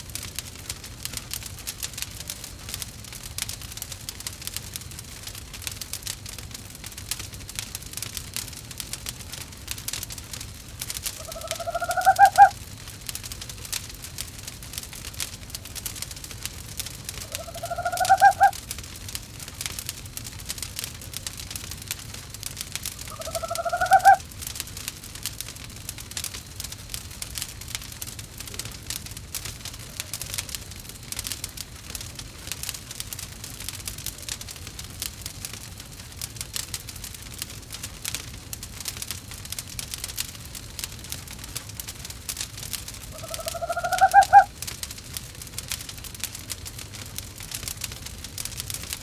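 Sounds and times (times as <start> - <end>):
wood fire crackling: 0.0 - 49.0
owl calling: 11.2 - 12.6, 17.2 - 18.6, 23.1 - 24.2, 43.2 - 44.5.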